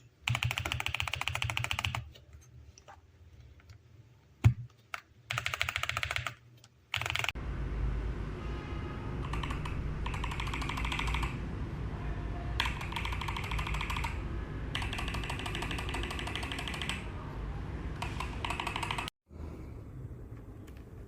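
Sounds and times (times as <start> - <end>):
mechanical keyboard typing: 0.2 - 2.1, 4.9 - 7.4, 9.2 - 11.4, 12.6 - 17.1, 18.0 - 19.1.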